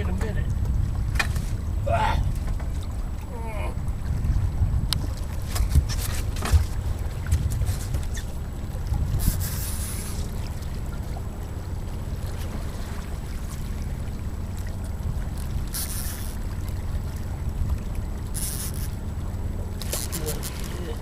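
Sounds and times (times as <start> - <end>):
wind on microphone: 0.0 - 11.6.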